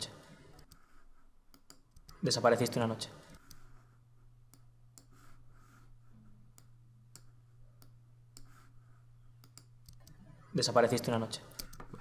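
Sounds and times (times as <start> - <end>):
low electrical hum: 0.0 - 12.0
computer mouse clicks: 0.5 - 0.9, 1.5 - 2.2, 9.4 - 10.2, 11.5 - 12.0.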